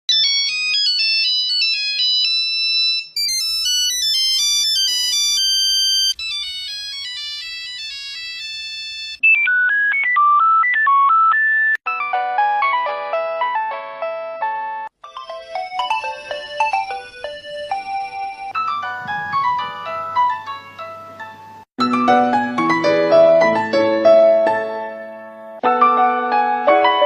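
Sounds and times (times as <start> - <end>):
mobile phone ringtones: 0.1 - 11.8, 15.0 - 20.8.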